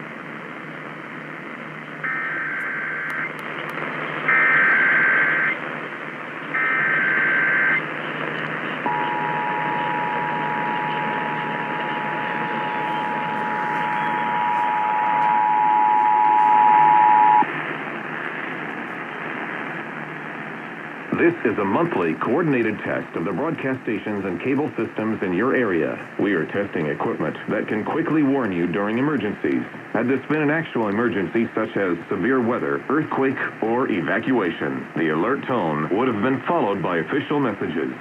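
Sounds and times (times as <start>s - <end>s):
radio static: 0.0s - 38.0s
digital data tone bursts: 8.9s - 17.4s
two-tone attention signal: 8.9s - 17.4s.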